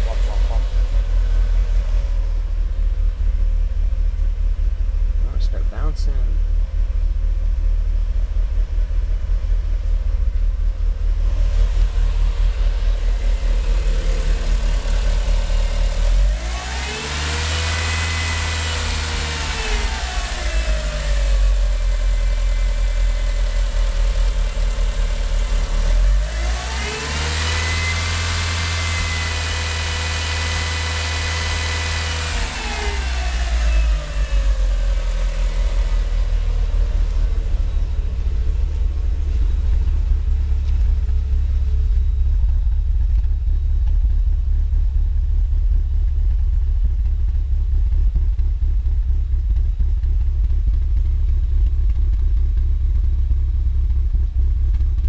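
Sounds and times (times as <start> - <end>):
car engine revving: 0.0 - 43.2
car engine idling unevenly: 0.0 - 55.0.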